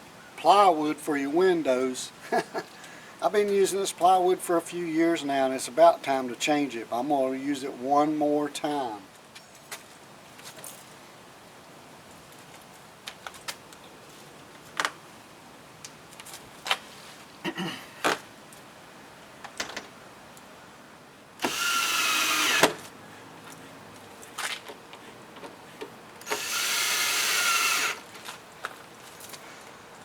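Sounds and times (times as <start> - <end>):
cordless drill driving a screw: 21.4 - 22.8, 26.2 - 28.0.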